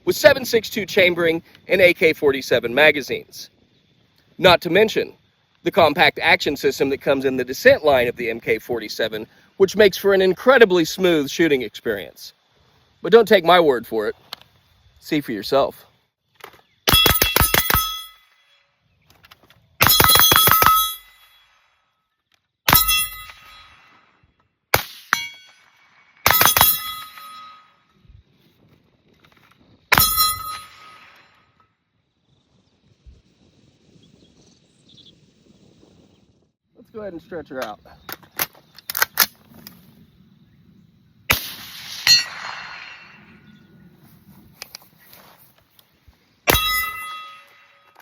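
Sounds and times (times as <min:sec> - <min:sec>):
rifle shots: 0:16.9 - 0:18.1, 0:19.8 - 0:21.0, 0:24.7 - 0:25.5, 0:26.2 - 0:27.4, 0:41.3 - 0:43.3
steel target ringing: 0:16.9 - 0:18.6, 0:19.8 - 0:21.6, 0:22.7 - 0:23.9, 0:24.8 - 0:27.9, 0:29.9 - 0:31.6, 0:41.8 - 0:43.4, 0:46.5 - 0:48.0
sharp clicks: 0:37.6 - 0:39.8.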